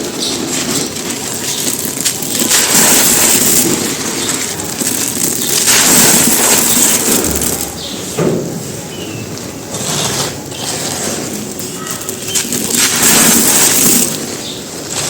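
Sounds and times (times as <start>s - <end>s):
cement chunks crunching: 0.0s - 15.0s.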